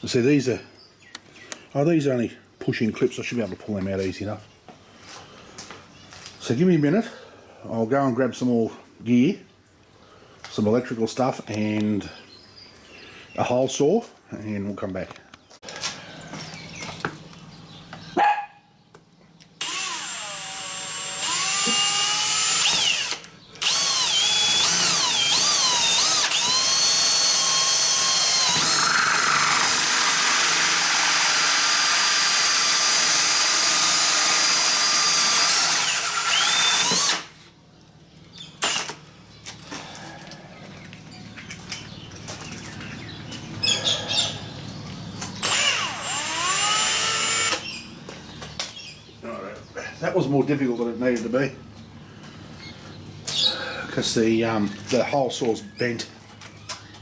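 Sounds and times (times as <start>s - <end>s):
power drill whining: 19.6s - 37.4s, 38.6s - 39.0s, 45.4s - 47.9s.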